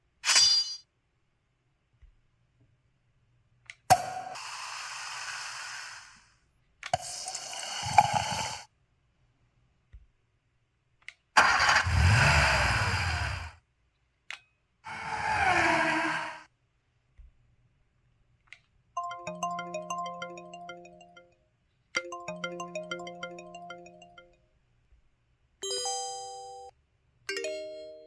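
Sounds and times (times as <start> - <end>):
synthetic sound effects: 19.0 - 21.3, 22.0 - 24.3
melodic ringtone chime: 19.0 - 21.4, 22.0 - 24.4, 25.6 - 26.7, 27.3 - 28.0.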